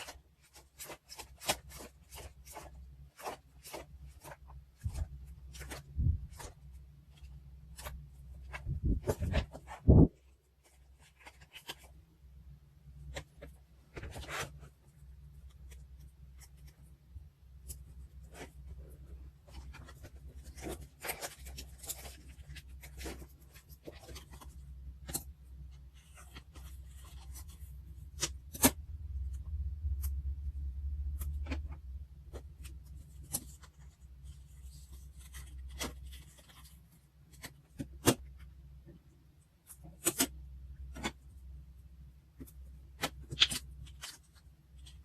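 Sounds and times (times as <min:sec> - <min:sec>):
paper rustling and scraping: 0:00.0 - 0:12.0, 0:13.0 - 0:16.9, 0:17.7 - 0:28.8
low steady hum: 0:00.0 - 0:45.0.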